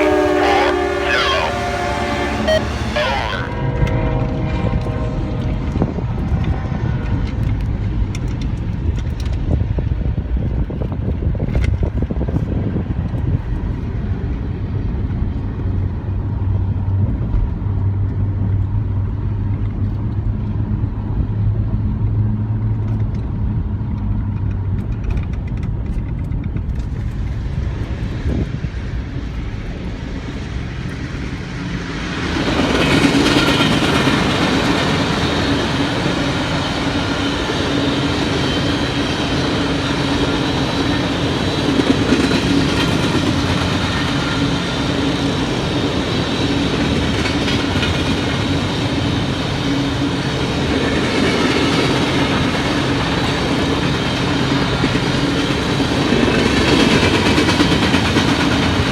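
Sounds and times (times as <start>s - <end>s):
train rushing past: 0.0s - 19.5s, 24.4s - 58.9s
diesel locomotive engine droning: 0.0s - 58.9s.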